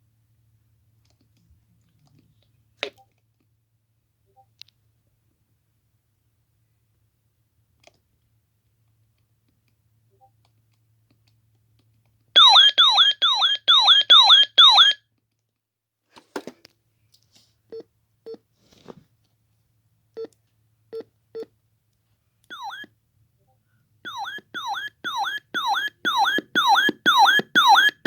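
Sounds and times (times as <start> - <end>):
electronic siren wail from a radio: 12.4 - 15.0, 22.5 - 22.9, 24.1 - 28.0.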